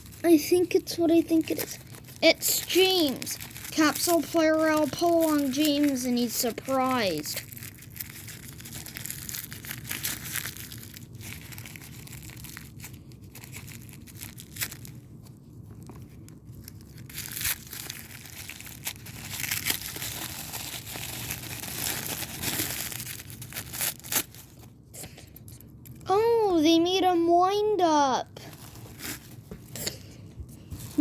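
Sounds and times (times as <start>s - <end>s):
plastic packaging crinkling and tearing: 0.0s - 26.0s, 28.5s - 30.0s.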